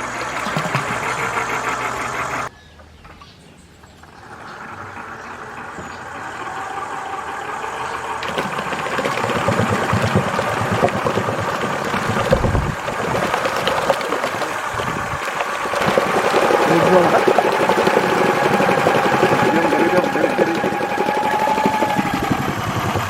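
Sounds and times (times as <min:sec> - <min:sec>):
motor running with whine: 0:12.2 - 0:12.8.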